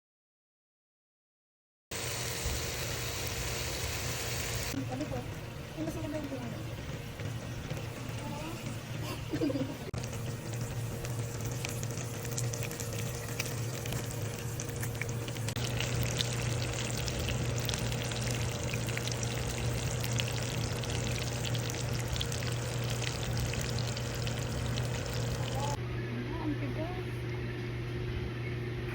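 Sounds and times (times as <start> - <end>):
steak sizzling in a pan: 2.0 - 4.8, 10.0 - 25.8
low hum: 2.2 - 28.9.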